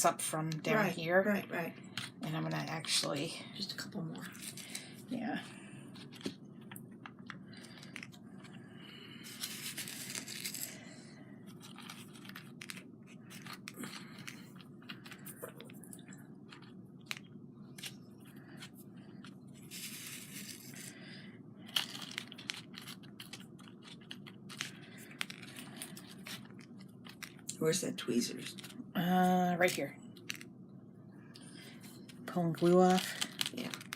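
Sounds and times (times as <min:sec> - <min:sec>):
rustling or tearing: 0:09.2 - 0:10.7.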